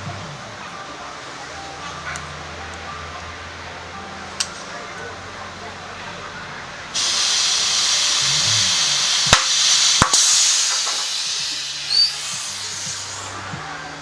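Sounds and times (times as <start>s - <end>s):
compressed air hissing from hose: 6.9s - 13.6s
sharp clicks: 8.3s - 13.4s.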